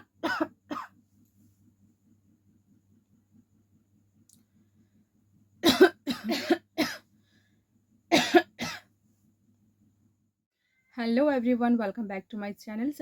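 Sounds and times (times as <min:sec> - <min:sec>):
person coughing: 0:00.0 - 0:00.9, 0:05.6 - 0:07.0, 0:08.1 - 0:08.9.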